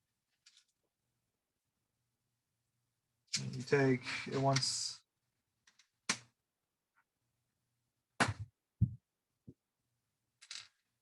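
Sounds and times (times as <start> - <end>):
plastic bricks clicking and knocking: 0.3 - 0.8, 5.6 - 6.3, 10.4 - 11.0.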